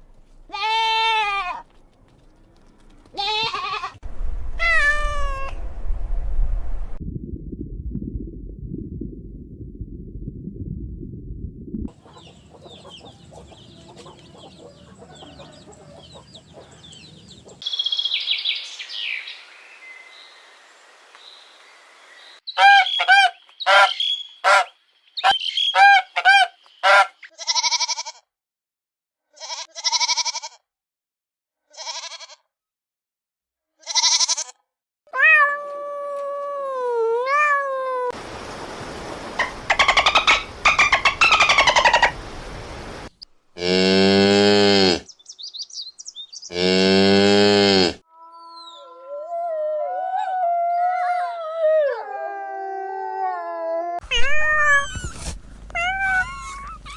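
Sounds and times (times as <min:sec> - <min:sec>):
rapid repeated animal calls: 0:11.9 - 0:17.6, 0:39.4 - 0:42.2
bird calls: 0:11.9 - 0:20.3, 0:22.2 - 0:27.3, 0:39.4 - 0:42.2, 0:45.0 - 0:46.7.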